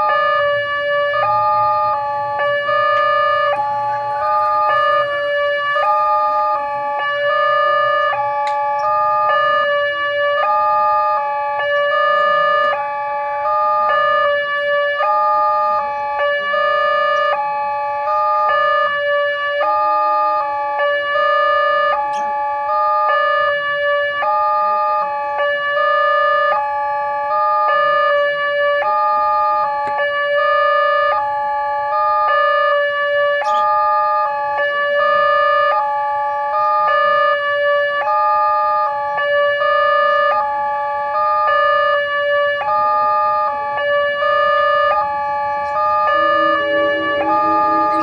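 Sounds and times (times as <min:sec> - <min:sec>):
lower alarm tone: 0:00.0 - 0:20.6, 0:43.6 - 0:48.0
level-crossing two-tone chime: 0:45.7 - 0:48.0.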